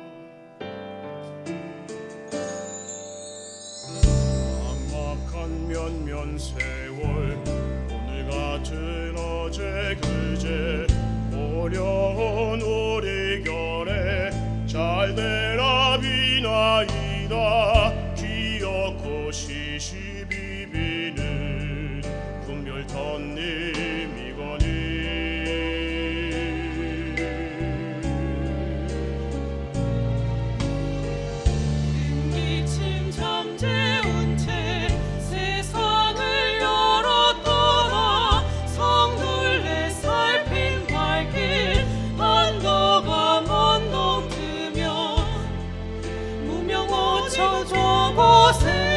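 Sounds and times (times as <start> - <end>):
choral ensemble singing: 23.0 - 48.9.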